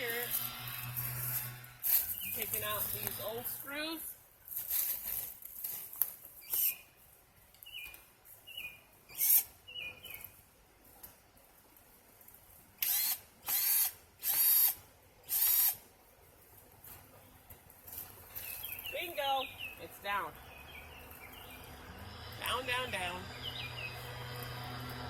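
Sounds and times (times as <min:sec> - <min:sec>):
cordless drill bursts: 0:12.8 - 0:15.8.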